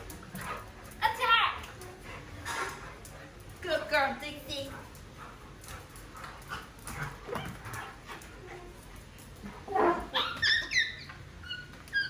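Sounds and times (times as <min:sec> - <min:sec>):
pet animal squealing: 0:09.9 - 0:12.0.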